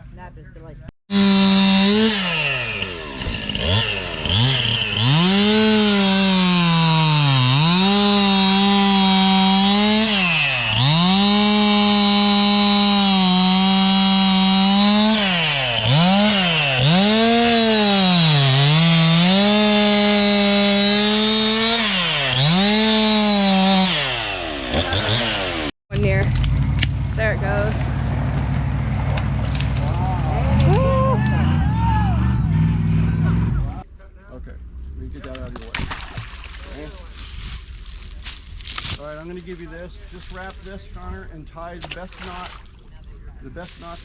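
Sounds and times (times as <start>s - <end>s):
chainsaw cutting wood: 1.1s - 30.8s.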